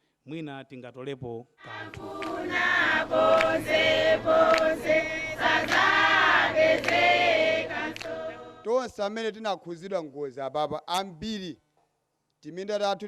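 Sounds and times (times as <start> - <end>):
group of people singing: 1.6 - 8.7.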